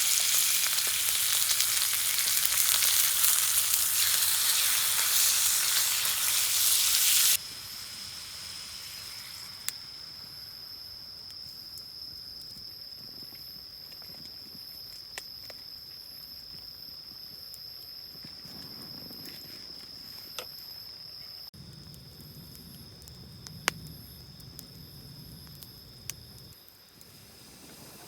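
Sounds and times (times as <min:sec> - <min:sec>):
food sizzling in a pan: 0:00.0 - 0:10.7, 0:27.0 - 0:28.0.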